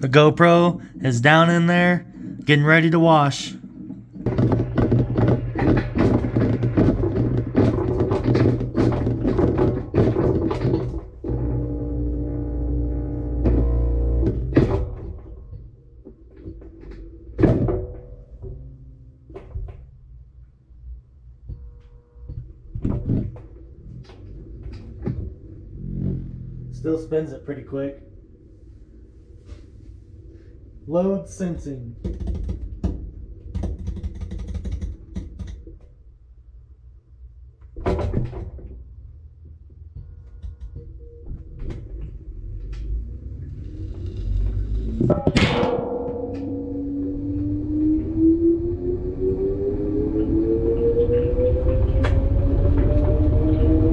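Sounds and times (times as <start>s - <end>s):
loud clunk: 44.9s - 48.2s.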